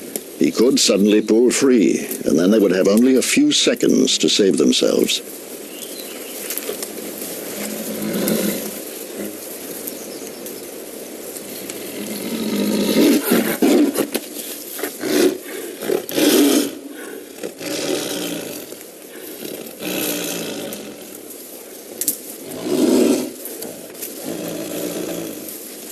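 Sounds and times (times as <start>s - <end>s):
tiger growling and snarling: 6.9s - 9.7s, 11.3s - 21.5s, 22.3s - 25.9s
tiger roaring: 7.4s - 9.4s, 11.4s - 21.3s, 22.4s - 25.8s.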